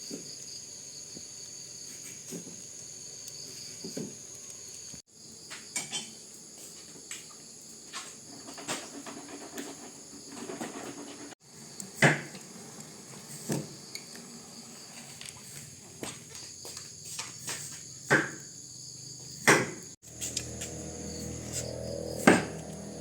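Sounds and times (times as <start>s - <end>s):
insects trilling: 0.0s - 23.0s
knocks and thuds of work: 19.4s - 19.8s.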